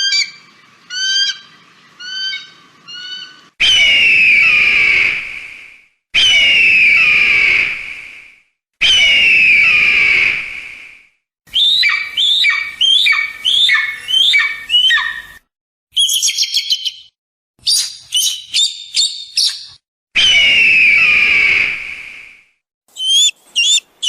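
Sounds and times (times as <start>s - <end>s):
kite calls: 22.9s - 24.0s.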